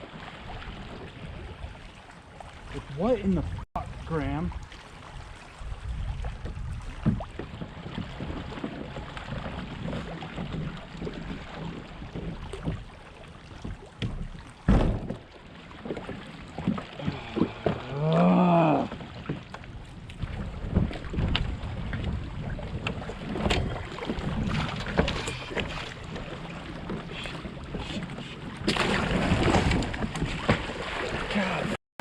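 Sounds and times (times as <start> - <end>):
water movement: 0.0 - 31.8
pitched groan: 17.0 - 19.0
knocks and clicks of gear: 22.8 - 23.8.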